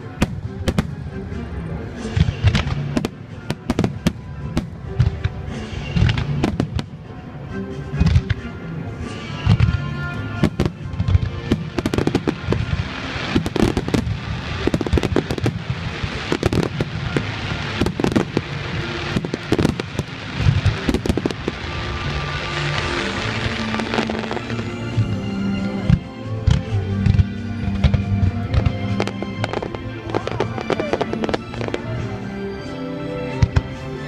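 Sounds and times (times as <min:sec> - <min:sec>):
music playing: 0:00.0 - 0:34.0
fireworks bursting: 0:09.2 - 0:32.0.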